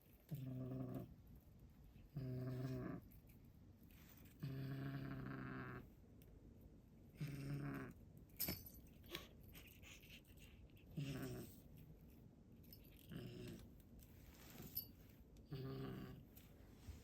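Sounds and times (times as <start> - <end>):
cat growling and chattering: 0.2 - 1.2, 2.0 - 3.2, 4.2 - 5.9, 7.1 - 8.0, 10.8 - 11.7, 12.9 - 13.7, 15.5 - 16.3.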